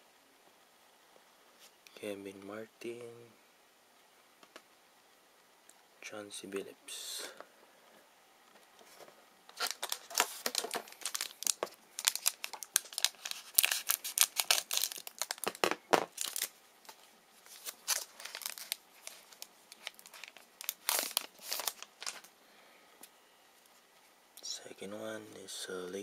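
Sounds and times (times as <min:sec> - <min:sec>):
wrapper being torn and crinkled: 0:09.5 - 0:16.6, 0:17.4 - 0:22.3.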